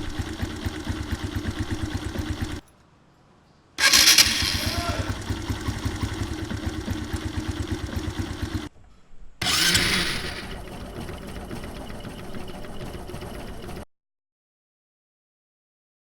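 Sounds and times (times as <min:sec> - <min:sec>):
electric starter whirring: 0:00.0 - 0:02.6, 0:03.8 - 0:08.7, 0:09.4 - 0:13.9
small motorcycle engine idling: 0:00.0 - 0:02.6, 0:03.8 - 0:08.7, 0:09.4 - 0:13.9.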